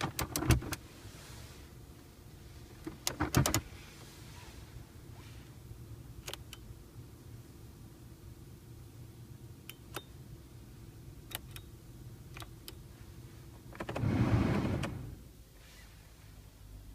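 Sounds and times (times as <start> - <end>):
steady low hum: 0.1 - 16.9
ventilation blower air rush: 10.2 - 16.6.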